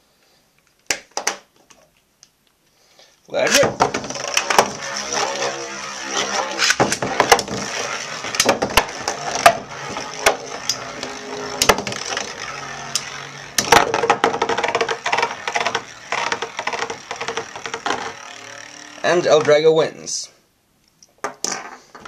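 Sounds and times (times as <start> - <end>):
spinning tops whirring: 3.4 - 20.2
spinning tops clashing: 3.5 - 19.6.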